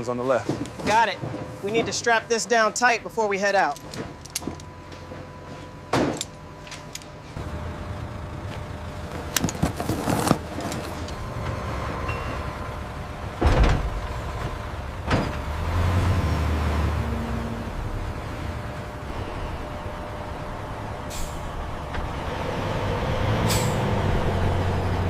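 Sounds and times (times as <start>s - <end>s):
vehicle engine running: 3.8s - 25.0s
loud clunks: 13.4s - 15.5s.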